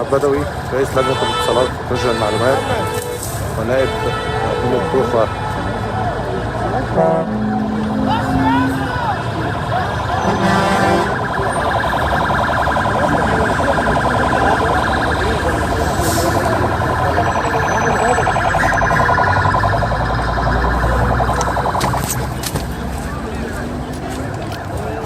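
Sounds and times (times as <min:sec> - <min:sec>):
emergency siren warbling: 0:04.9 - 0:23.7.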